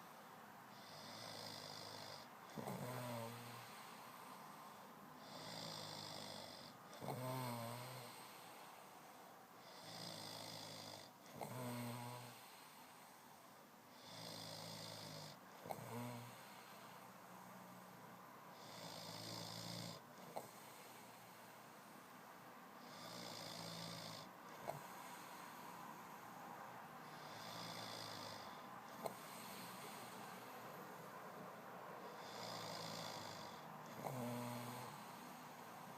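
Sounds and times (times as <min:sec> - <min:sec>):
breathy hiss: 0:00.0 - 0:35.9
man snoring: 0:00.7 - 0:04.4, 0:05.2 - 0:08.9, 0:09.6 - 0:13.0, 0:13.9 - 0:17.0, 0:18.5 - 0:21.4, 0:22.8 - 0:26.0, 0:27.0 - 0:30.6, 0:32.1 - 0:35.9.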